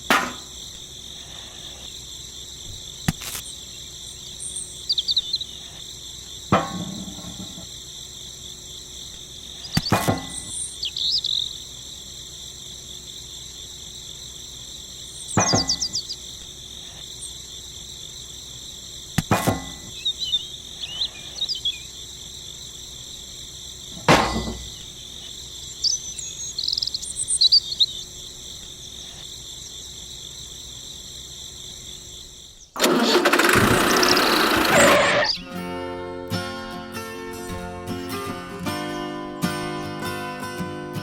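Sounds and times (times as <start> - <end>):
insects chirping: 0.0 - 41.0
sharp clicks: 32.8 - 35.0.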